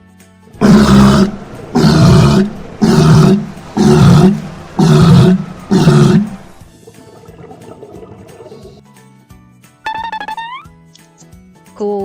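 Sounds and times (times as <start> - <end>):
faint background music: 0.0 - 12.0
seal barking: 0.6 - 6.6.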